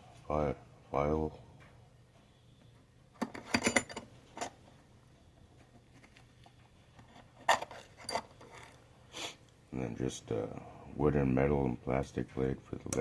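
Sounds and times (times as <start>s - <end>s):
metal tools clinking and rattling: 3.2s - 4.6s, 7.1s - 8.8s.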